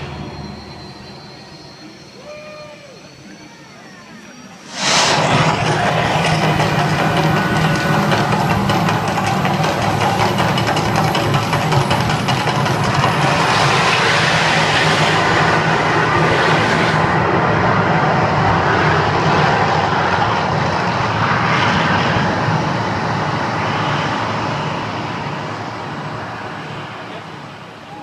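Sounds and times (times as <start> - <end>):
roar of gas flames: 4.6 - 9.1, 12.9 - 19.2
deep rumble: 4.6 - 10.8.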